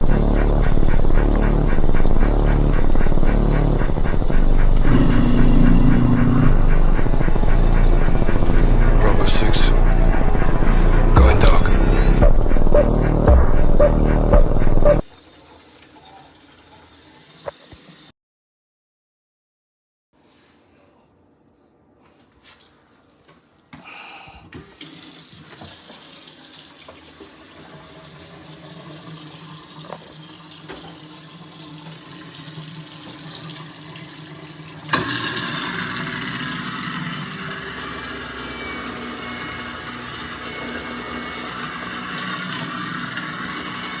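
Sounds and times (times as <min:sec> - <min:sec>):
garbage disposal motor running: 0:00.0 - 0:15.0, 0:34.9 - 0:44.0
water running from tap into sink: 0:15.1 - 0:18.1, 0:24.8 - 0:38.2, 0:39.0 - 0:44.0.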